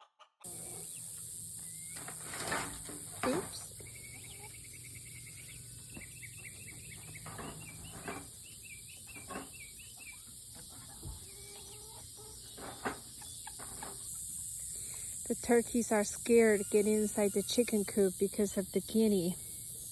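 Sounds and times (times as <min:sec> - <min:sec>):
birds chirping: 0:00.5 - 0:13.9
crickets chirping: 0:00.5 - 0:19.9.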